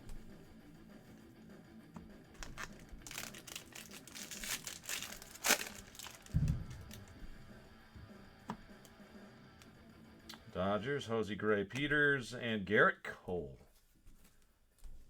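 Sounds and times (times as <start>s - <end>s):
foil wrapper crinkling and tearing: 2.4s - 7.1s
dull thump: 6.2s - 6.9s.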